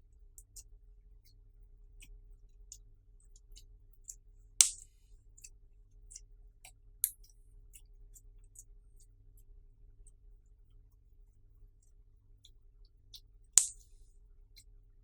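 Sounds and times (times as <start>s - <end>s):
slime squishing with sticky clicks: 2.0s - 8.7s, 13.1s - 14.0s
sharp pop: 4.6s - 4.8s, 13.6s - 13.9s.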